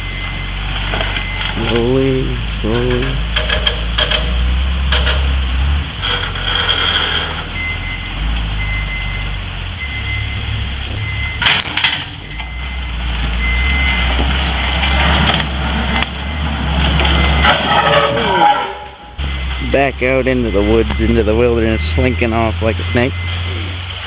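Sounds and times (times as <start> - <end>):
backup alarm beeping: 0.0 - 4.2, 7.0 - 15.0, 15.9 - 24.0
diesel engine running: 0.0 - 24.0
clanking knocks: 2.7 - 7.4.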